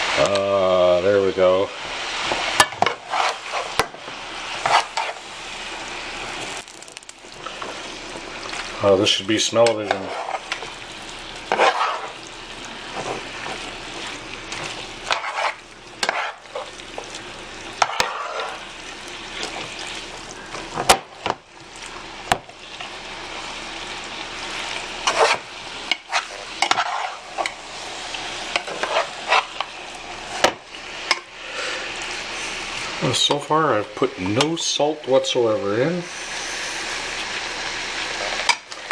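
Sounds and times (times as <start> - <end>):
food sizzling in a pan: 0.0 - 38.9
utensil scraping a pan: 2.2 - 5.2, 9.6 - 10.7, 11.5 - 12.2, 12.9 - 16.8, 17.8 - 18.6, 25.0 - 27.6, 28.5 - 30.5.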